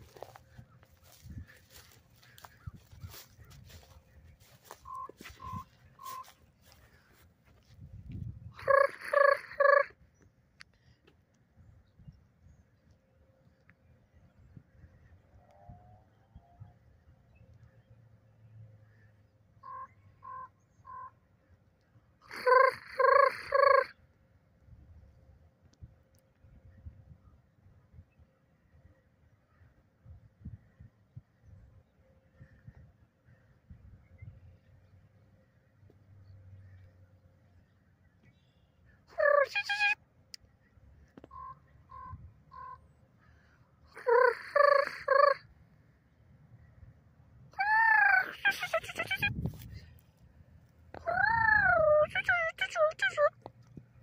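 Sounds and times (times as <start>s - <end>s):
bird calling: 0.0s - 7.2s, 8.5s - 10.0s, 38.2s - 40.0s, 41.1s - 45.5s
birds calling: 0.0s - 7.7s.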